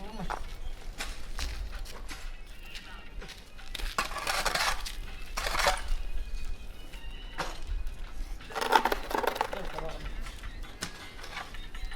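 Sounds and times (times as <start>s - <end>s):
rubble clattering and scraping: 3.6s - 6.0s, 8.4s - 10.2s.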